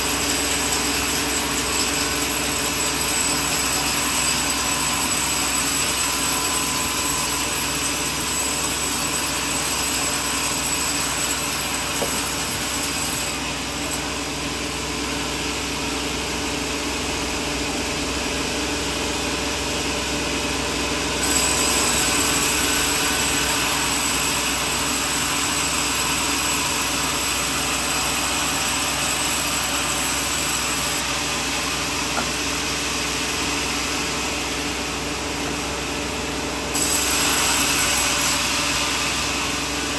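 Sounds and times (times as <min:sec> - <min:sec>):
sawmill saw cutting wood: 0:00.0 - 0:14.1, 0:21.2 - 0:35.5, 0:36.7 - 0:39.9.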